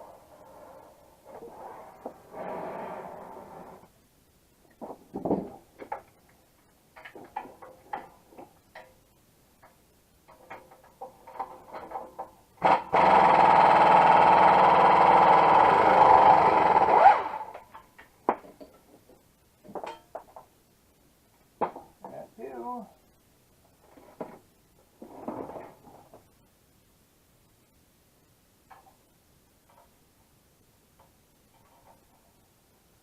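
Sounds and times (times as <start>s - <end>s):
handheld power tool running: 12.6s - 17.5s.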